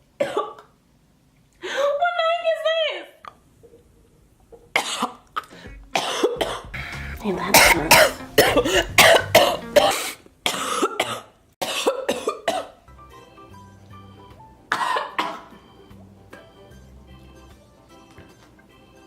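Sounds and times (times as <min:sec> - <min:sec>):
woman coughing: 0:00.2 - 0:00.7, 0:04.8 - 0:06.7, 0:07.5 - 0:12.8, 0:14.7 - 0:15.5
quiet background music: 0:04.6 - 0:19.0.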